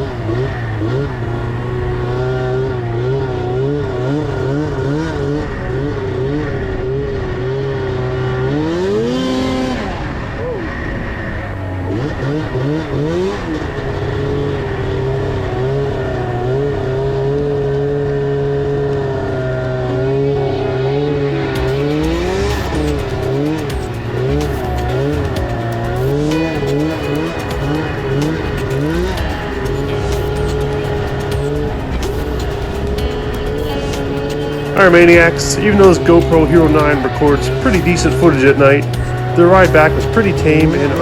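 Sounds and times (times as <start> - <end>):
snowmobile engine revving: 0.0 - 41.0.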